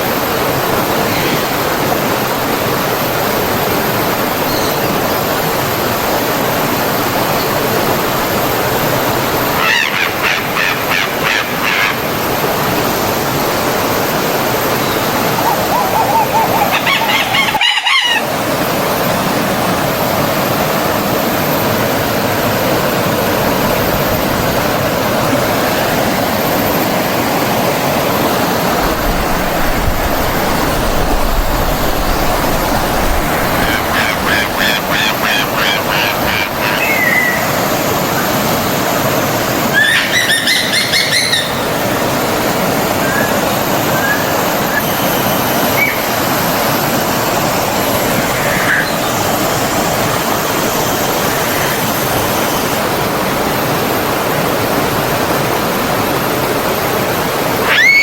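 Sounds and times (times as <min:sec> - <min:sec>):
stream flowing: 0:00.0 - 0:58.0
bird calls: 0:04.5 - 0:05.2, 0:14.7 - 0:18.4, 0:28.8 - 0:38.4, 0:39.7 - 0:42.0, 0:42.9 - 0:46.2, 0:48.1 - 0:49.4, 0:57.6 - 0:58.0.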